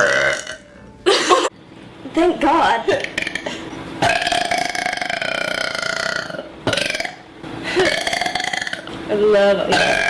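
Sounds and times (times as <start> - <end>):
woman burping: 0.0 - 0.6, 2.9 - 8.9, 9.7 - 10.0.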